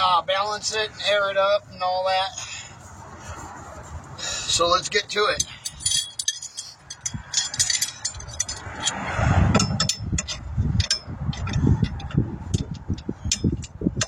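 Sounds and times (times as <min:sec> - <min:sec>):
tools clinking and clattering: 0:05.2 - 0:13.8
wind buffeting microphone: 0:06.9 - 0:14.0.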